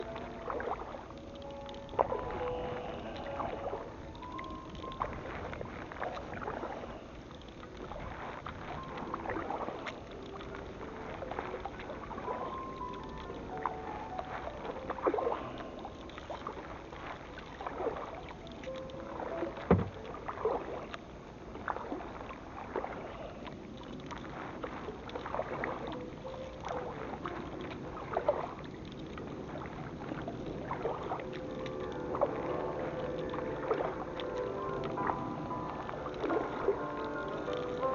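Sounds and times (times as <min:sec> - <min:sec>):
paddle strokes splashing: 0:00.0 - 0:37.9
water noise: 0:00.0 - 0:37.9.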